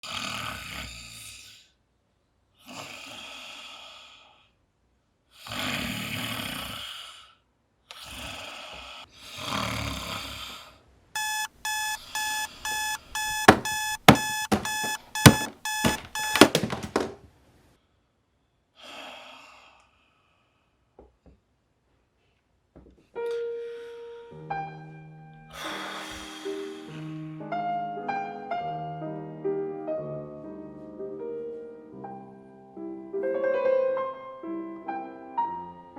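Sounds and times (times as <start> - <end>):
person snoring: 0.0 - 1.7, 5.4 - 10.7, 25.5 - 27.1
alarm clock beeping: 11.2 - 16.9
sharp knocks: 12.3 - 17.2.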